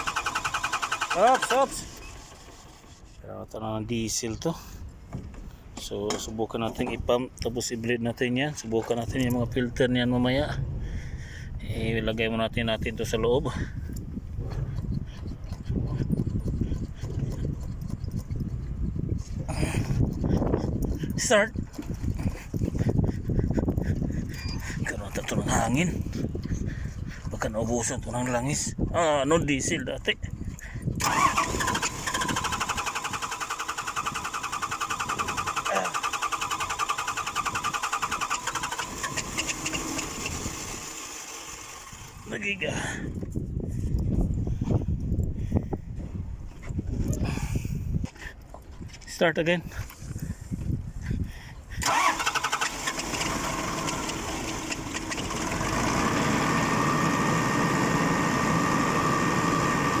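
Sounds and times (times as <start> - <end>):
diesel engine cranking: 0.0 - 3.3, 30.6 - 42.9, 51.7 - 60.0.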